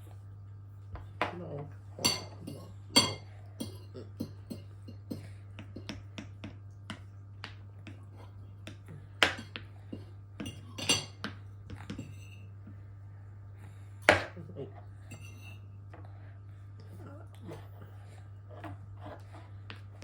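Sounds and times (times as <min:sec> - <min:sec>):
steady low hum: 0:00.0 - 0:20.0
dishes and cutlery clinking: 0:02.0 - 0:06.0, 0:09.2 - 0:12.6, 0:15.0 - 0:15.7.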